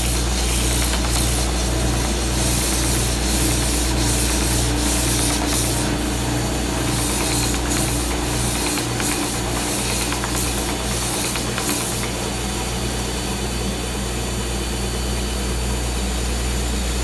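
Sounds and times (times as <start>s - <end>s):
stationary sander running: 0.0s - 12.9s
shop vacuum running: 0.0s - 17.0s.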